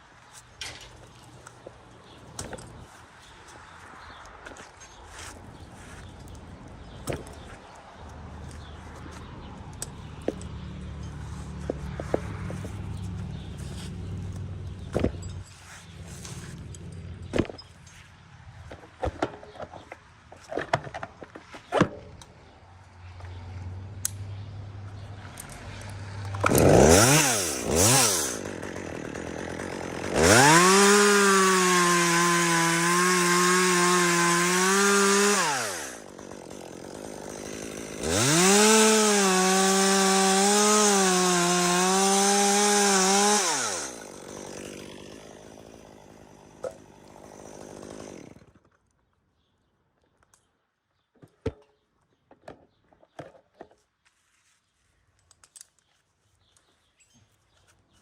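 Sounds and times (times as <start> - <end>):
chainsaw cutting wood: 8.4 - 17.6, 25.5 - 48.8.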